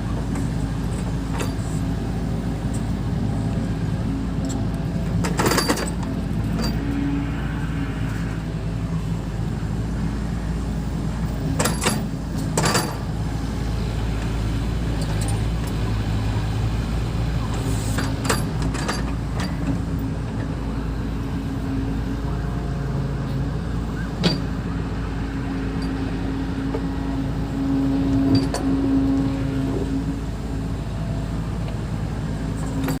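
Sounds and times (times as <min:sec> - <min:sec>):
bulldozer diesel engine running: 0:00.0 - 0:33.0.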